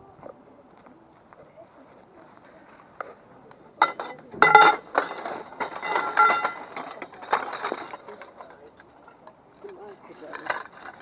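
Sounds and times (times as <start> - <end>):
scrap metal clanking: 3.8 - 9.3.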